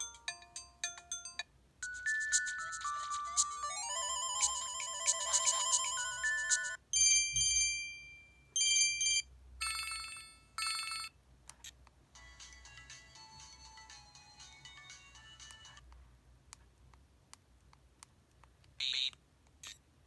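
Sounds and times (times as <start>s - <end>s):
phone melodic ringtone: 0.0s - 11.1s, 12.2s - 15.8s.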